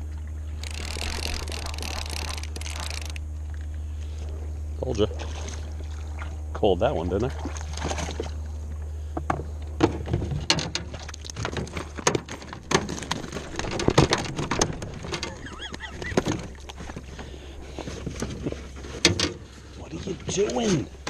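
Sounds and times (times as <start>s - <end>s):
boat engine rumble: 0.0s - 21.0s
water splashes and knocks: 7.1s - 8.4s, 9.2s - 15.3s.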